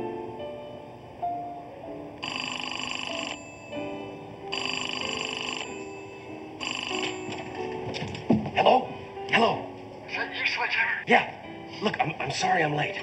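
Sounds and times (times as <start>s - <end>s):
soft background music: 0.0s - 13.0s
payphone ringing: 2.2s - 7.9s.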